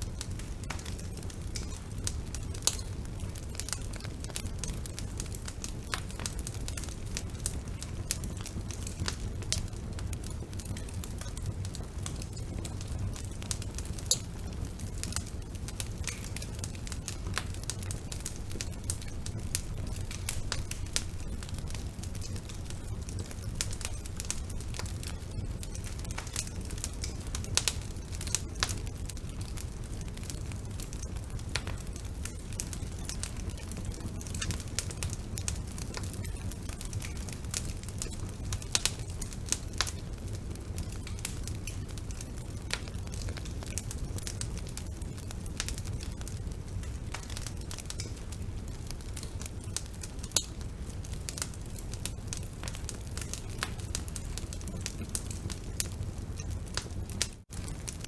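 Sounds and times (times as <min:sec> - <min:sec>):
low rumble of flames: 0:00.0 - 0:58.0
wood fire crackling and popping: 0:00.0 - 0:58.0.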